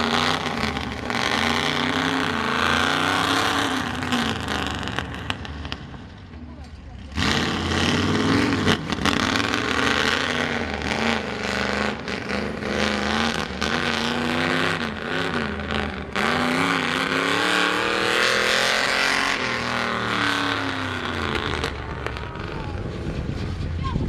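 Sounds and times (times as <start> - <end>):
truck engine revving: 0.0 - 24.0.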